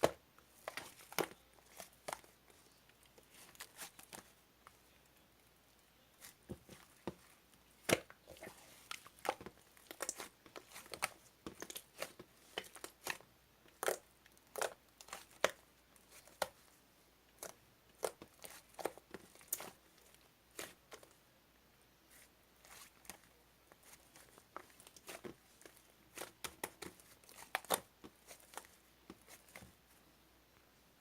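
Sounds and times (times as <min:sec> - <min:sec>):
crinkling: 0:22.1 - 0:30.0.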